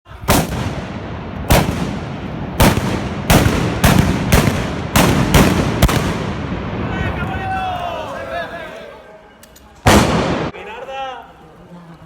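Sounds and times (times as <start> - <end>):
blunderbuss shots: 0.2 - 7.2, 9.9 - 10.6
rumbling echo: 0.3 - 7.5, 9.9 - 10.6.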